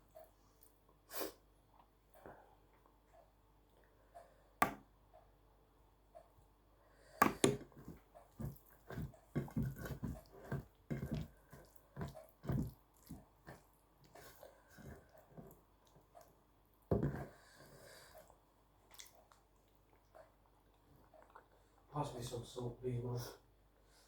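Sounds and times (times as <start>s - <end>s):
wet chewing and mouth clicks: 7.8s - 16.9s, 18.2s - 21.6s.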